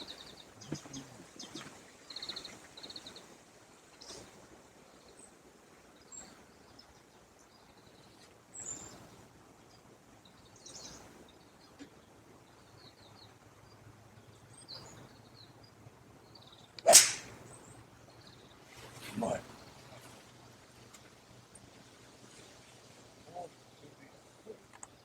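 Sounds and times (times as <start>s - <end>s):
faint birds chirping: 0.0s - 25.0s
golf club striking ball: 16.8s - 17.4s.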